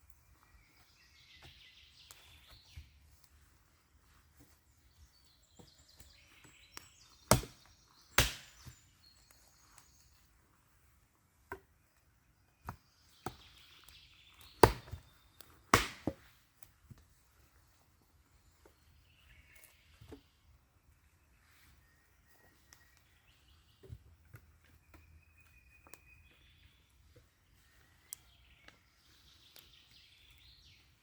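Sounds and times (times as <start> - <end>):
axe chopping wood: 7.2 - 8.8, 14.4 - 16.4.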